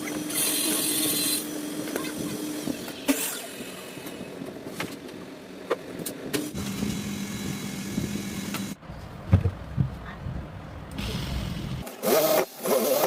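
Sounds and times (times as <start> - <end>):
small motor humming: 0.0 - 4.4
low thumps: 9.2 - 10.5.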